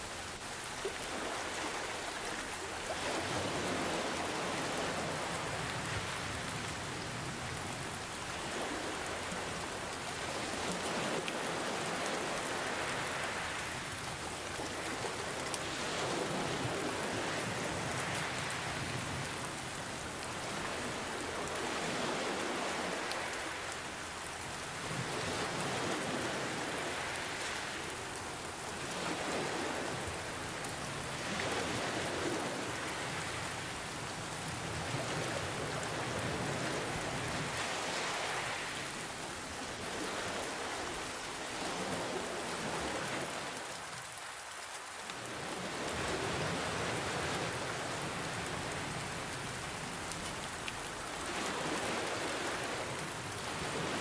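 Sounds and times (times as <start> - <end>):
gentle ocean waves: 0.0 - 54.0
steady rainfall: 0.0 - 54.0.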